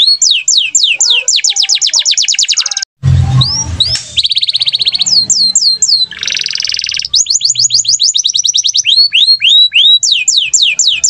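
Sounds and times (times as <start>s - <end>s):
canary singing: 0.0s - 11.0s.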